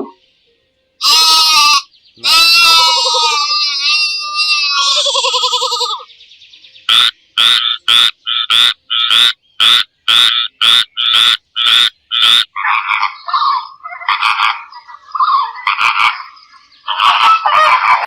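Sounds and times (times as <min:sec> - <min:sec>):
frog croaking: 0:00.0 - 0:00.2, 0:06.9 - 0:18.0
irregular animal call: 0:01.0 - 0:06.1, 0:06.9 - 0:18.0.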